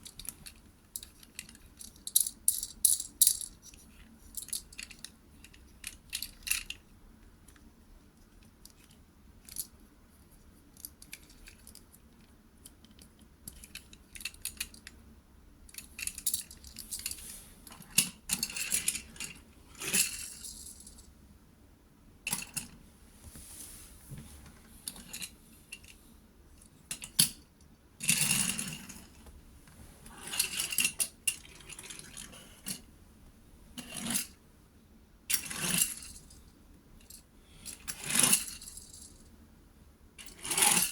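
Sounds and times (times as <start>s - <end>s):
toy parts clicking and rattling: 0.0s - 6.8s, 10.7s - 15.0s, 15.7s - 17.2s.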